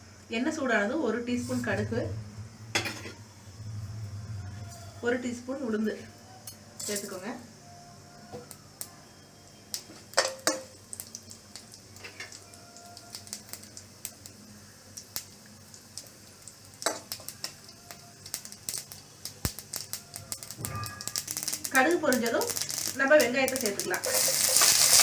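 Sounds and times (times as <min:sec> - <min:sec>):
seeds popping in hot oil: 0:09.6 - 0:25.0.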